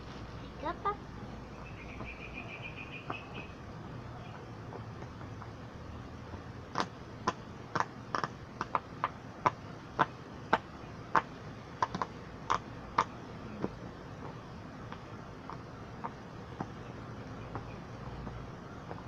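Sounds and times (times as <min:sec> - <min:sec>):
fidget toy popping: 0:06.7 - 0:16.8.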